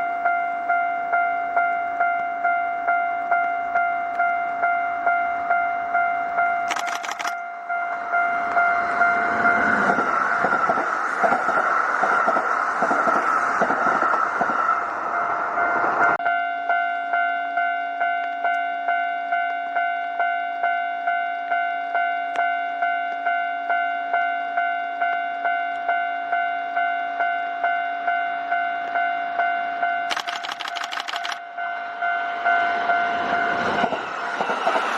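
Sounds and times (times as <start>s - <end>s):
train passing with rushing rumble: 7.4s - 34.9s.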